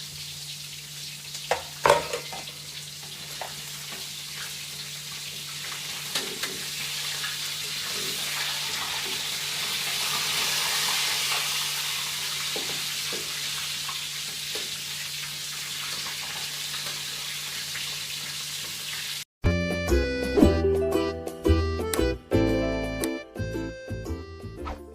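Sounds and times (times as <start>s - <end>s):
food sizzling in a pan: 0.0s - 19.3s
steady bass line: 19.4s - 24.8s
keyboard notes: 19.4s - 24.9s
music: 19.4s - 24.9s.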